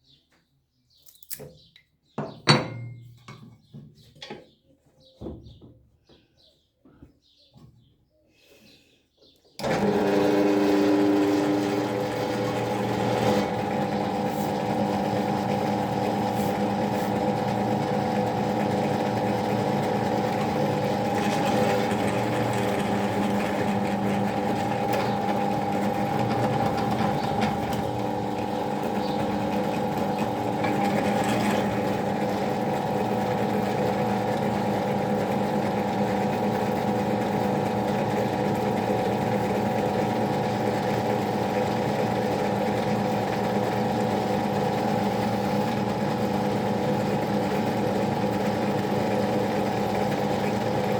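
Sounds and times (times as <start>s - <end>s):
power tool motor humming: 9.6s - 38.1s.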